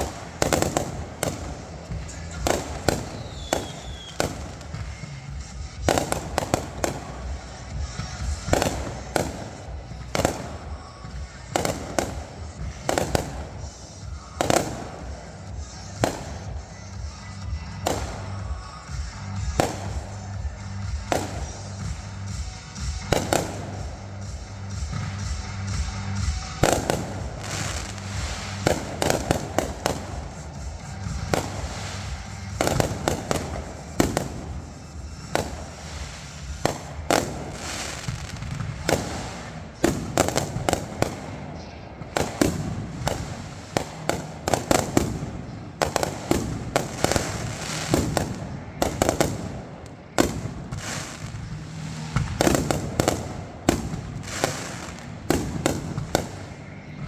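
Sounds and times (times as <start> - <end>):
fireworks bangs and crackling pops: 0.0 - 57.0
music: 0.0 - 57.0.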